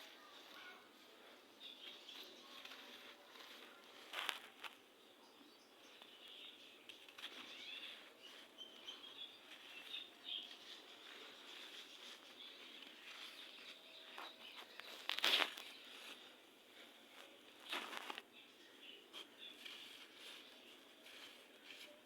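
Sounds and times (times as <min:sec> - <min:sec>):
sand crumbling and crackling: 0:14.4 - 0:16.3.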